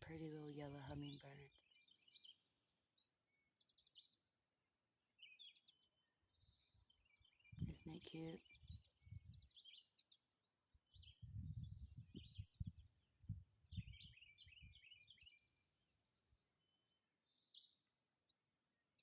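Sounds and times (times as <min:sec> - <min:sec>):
songbirds chirping: 0:00.0 - 0:19.0.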